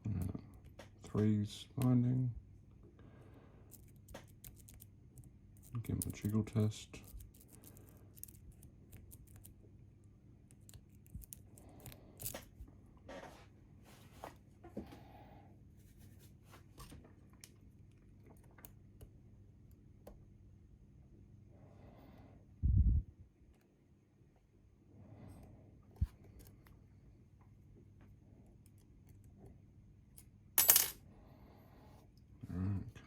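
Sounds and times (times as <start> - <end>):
low steady hum: 0.0 - 33.0
lock picks clicking and scraping: 3.7 - 9.6, 10.5 - 12.5.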